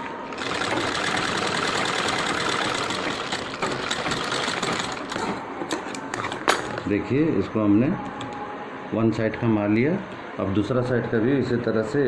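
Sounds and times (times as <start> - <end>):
sewing machine running: 0.3 - 5.4.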